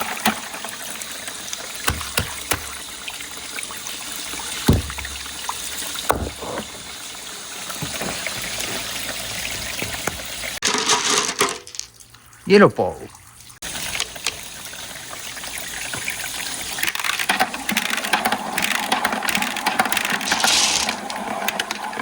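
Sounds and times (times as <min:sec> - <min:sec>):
water running and trickling: 0:00.0 - 0:10.6, 0:11.7 - 0:18.2.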